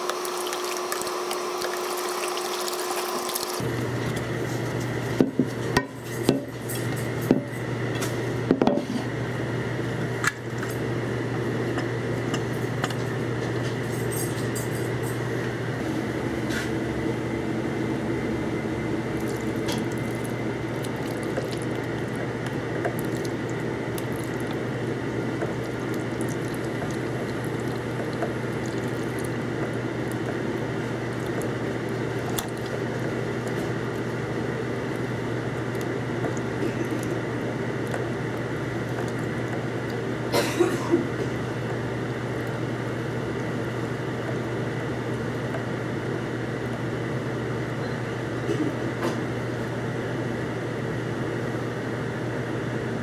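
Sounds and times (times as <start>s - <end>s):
liquid sloshing: 0.0s - 5.2s, 19.2s - 40.3s
steady low hum: 3.6s - 53.0s.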